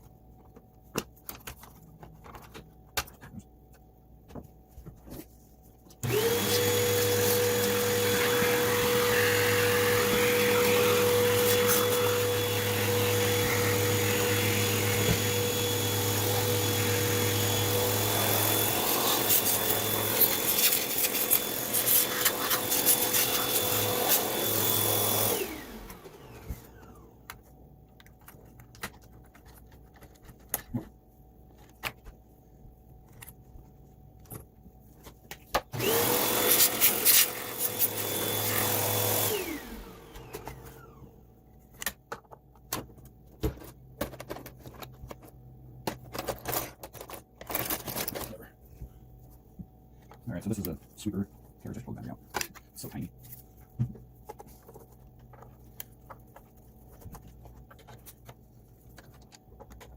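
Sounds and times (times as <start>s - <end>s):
vacuum cleaner whining: 6.0s - 27.3s, 35.7s - 41.2s.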